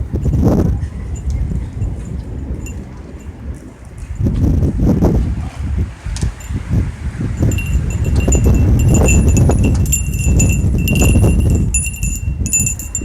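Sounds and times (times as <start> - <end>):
wind chimes tinkling: 0.1 - 3.4, 6.4 - 6.7, 7.4 - 13.0.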